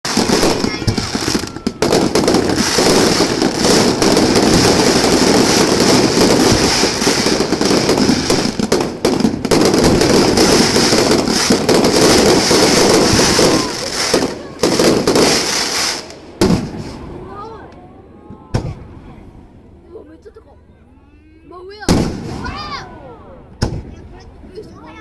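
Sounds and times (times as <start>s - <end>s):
fireworks crackling bangs: 0.0s - 17.2s, 21.8s - 22.9s, 23.5s - 24.3s.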